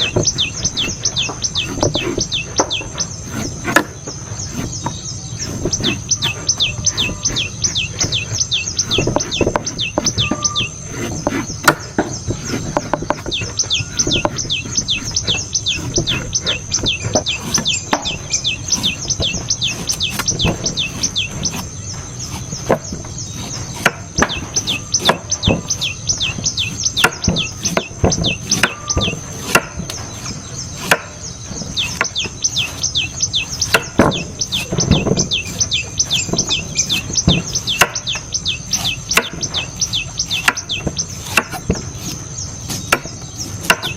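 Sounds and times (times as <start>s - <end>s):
knife chopping coconut: 1.6s - 7.6s, 22.3s - 25.9s, 26.7s - 32.8s, 33.6s - 35.6s, 36.3s - 38.1s, 38.8s - 39.6s, 40.3s - 43.9s.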